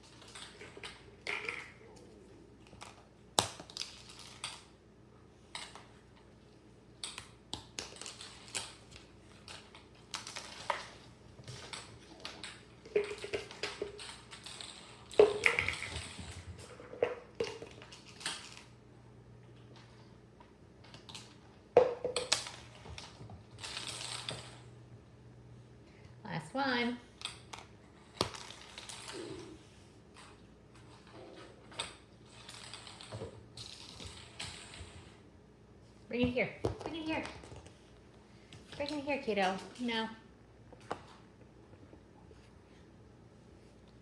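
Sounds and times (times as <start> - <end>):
toy discs clattering on floor: 0.0 - 4.8, 7.0 - 18.7, 20.9 - 24.8, 27.2 - 35.2.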